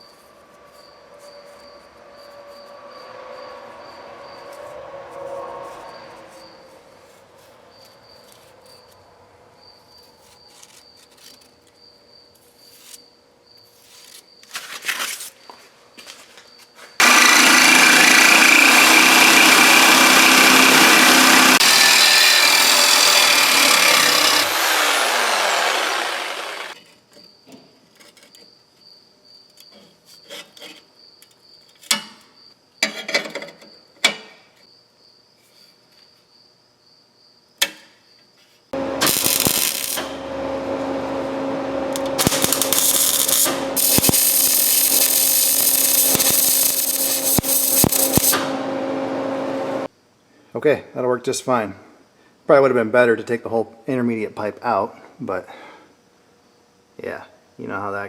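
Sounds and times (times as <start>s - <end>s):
cutoff wheel cutting steel pipe: 17.0s - 26.8s, 38.8s - 49.9s.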